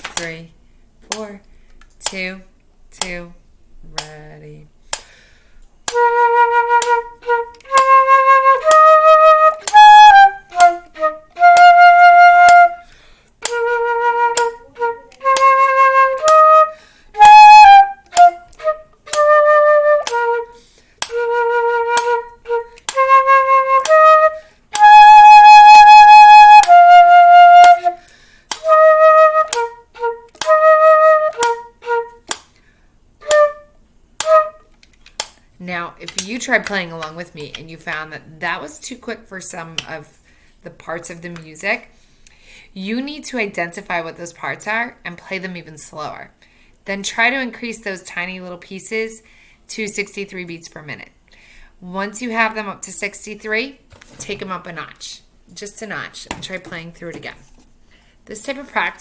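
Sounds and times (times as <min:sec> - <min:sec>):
metronome ticking: 0:05.8 - 0:12.8, 0:13.4 - 0:20.4, 0:21.0 - 0:32.4, 0:33.2 - 0:33.6
woodwind playing slow melody: 0:05.9 - 0:28.0, 0:28.6 - 0:32.2, 0:33.2 - 0:34.7.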